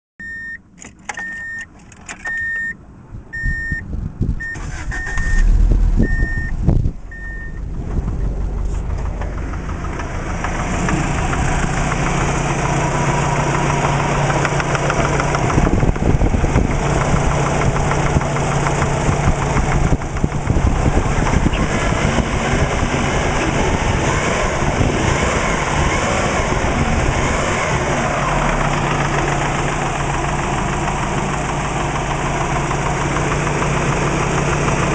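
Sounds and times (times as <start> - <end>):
car engine starting and idling: 0.2 - 34.9
electronic chime beeps: 4.4 - 6.5, 7.1 - 7.6
knocking clatter in engine: 7.6 - 24.0, 28.3 - 34.9.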